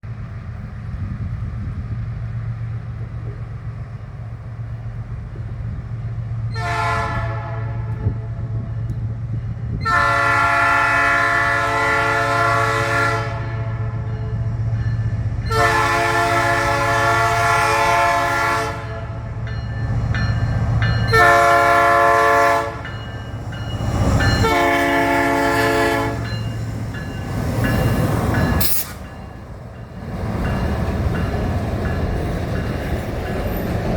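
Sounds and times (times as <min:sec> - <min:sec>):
locomotive engine rumble: 0:00.0 - 0:33.9
locomotive air horn blasts: 0:06.5 - 0:08.6, 0:09.8 - 0:14.1, 0:15.5 - 0:19.4, 0:21.0 - 0:22.9, 0:24.4 - 0:26.4.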